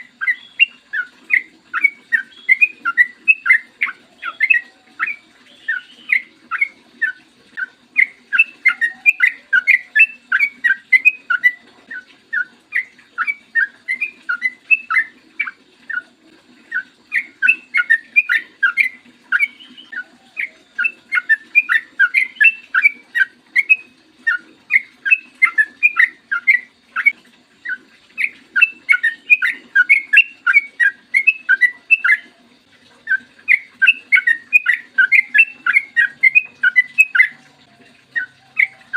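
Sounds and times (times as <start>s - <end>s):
bird singing bubbling notes: 0.0s - 38.9s.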